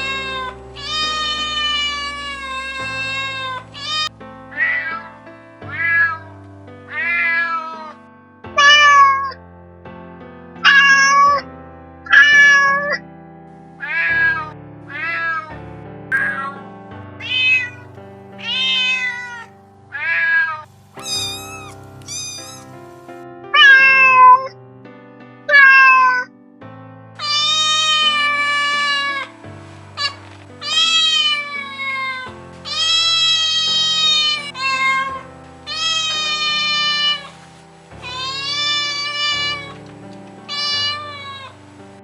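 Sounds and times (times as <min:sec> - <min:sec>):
cat meowing: 0:00.0 - 0:05.1, 0:05.7 - 0:06.3, 0:06.9 - 0:08.0, 0:08.6 - 0:09.4, 0:10.6 - 0:11.4, 0:12.1 - 0:13.0, 0:13.8 - 0:16.6, 0:17.2 - 0:22.8, 0:23.6 - 0:24.5, 0:25.5 - 0:26.3, 0:27.2 - 0:29.4, 0:30.0 - 0:37.4, 0:38.0 - 0:39.8, 0:40.5 - 0:41.6
background music with held notes: 0:00.0 - 0:42.0.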